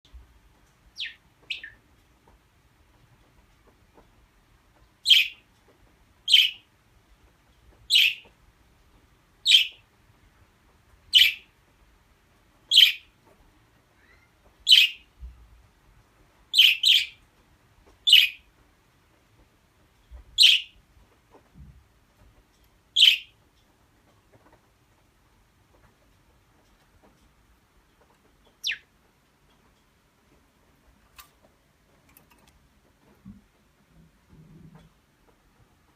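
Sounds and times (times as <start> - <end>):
budgerigar chirping: 1.0 - 1.8, 5.0 - 5.4, 6.3 - 6.6, 7.9 - 8.3, 9.5 - 9.8, 11.1 - 11.4, 12.7 - 13.0, 14.7 - 15.0, 16.5 - 17.2, 18.1 - 18.4, 20.4 - 20.8, 23.0 - 23.3, 28.6 - 28.9.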